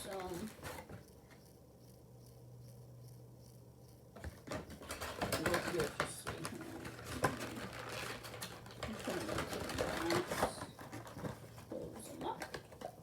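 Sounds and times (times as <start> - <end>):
box clicking and crinkling: 4.2 - 13.0.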